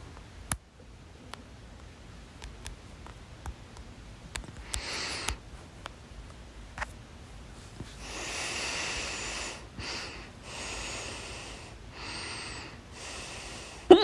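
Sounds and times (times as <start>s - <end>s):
breathy rush of air: 8.0s - 14.0s.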